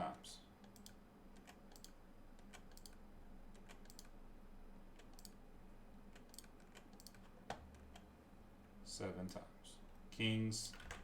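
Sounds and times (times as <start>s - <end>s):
computer clicks: 0.6s - 4.2s, 5.0s - 5.4s, 6.1s - 8.1s.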